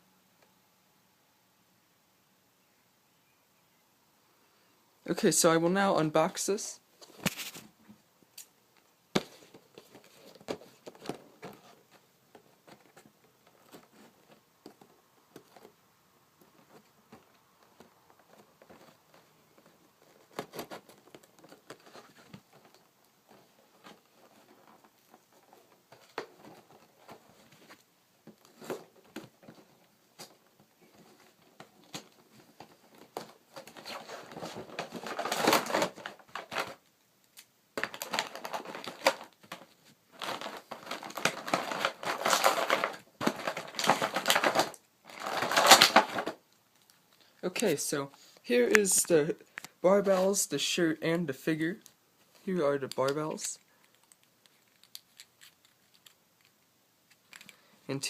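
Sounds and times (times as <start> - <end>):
plastic crinkling: 16.4 - 50.4, 52.3 - 57.6
packaging being torn open: 40.2 - 46.4, 54.0 - 56.2.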